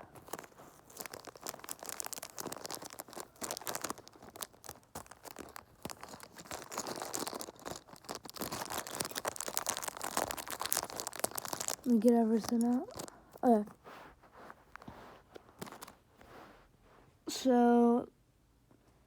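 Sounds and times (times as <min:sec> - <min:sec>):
packaging torn and crinkled: 0:00.0 - 0:13.4.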